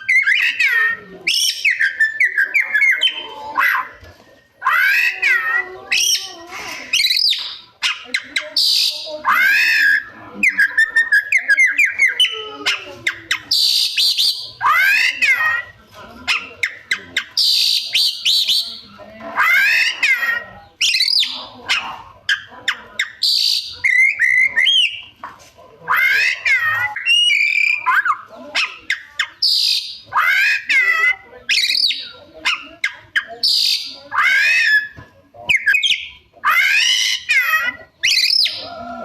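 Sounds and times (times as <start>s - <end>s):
bird singing varied song: 0.0s - 3.9s, 4.5s - 25.2s, 25.9s - 38.8s.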